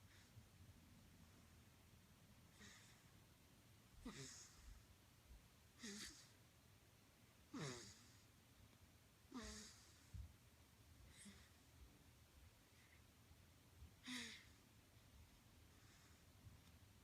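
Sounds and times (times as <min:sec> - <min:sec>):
baby snoring softly: 0:04.0 - 0:04.8, 0:05.8 - 0:06.4, 0:07.5 - 0:08.2, 0:09.3 - 0:10.1.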